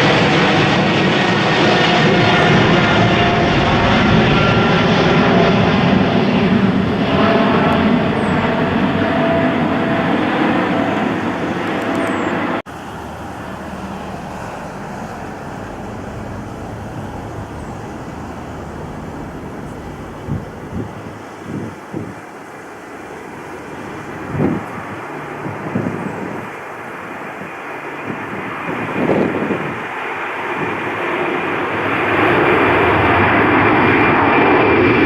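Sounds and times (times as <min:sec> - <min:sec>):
jet airliner engines roaring: 0:00.0 - 0:35.0
quiet steady rumble: 0:12.7 - 0:21.4.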